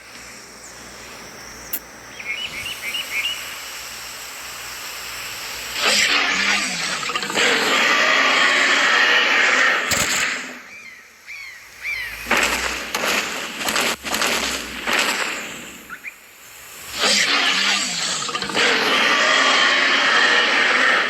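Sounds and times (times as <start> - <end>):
dinosaur roar: 5.8 - 10.5, 16.9 - 21.0.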